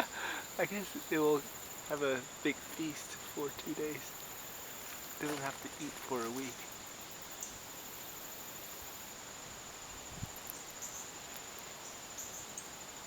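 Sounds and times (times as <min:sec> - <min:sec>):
insects trilling: 0:00.0 - 0:13.0
outdoor air hiss: 0:00.0 - 0:13.0.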